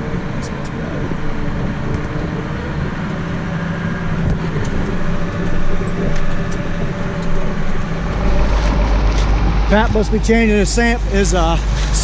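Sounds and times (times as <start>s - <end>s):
diesel truck engine idling: 7.8s - 12.0s.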